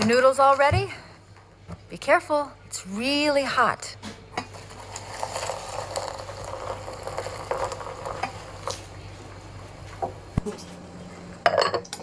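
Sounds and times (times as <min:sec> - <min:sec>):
hot water pouring into bowl: 0:04.5 - 0:09.0.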